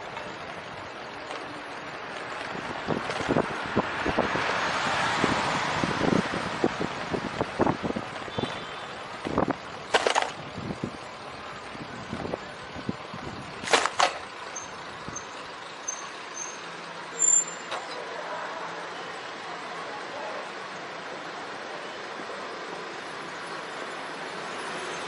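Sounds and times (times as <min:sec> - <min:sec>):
street traffic: 0:00.0 - 0:25.0
bicycle knocks and rattles: 0:01.2 - 0:03.6, 0:07.3 - 0:10.9, 0:13.6 - 0:14.3.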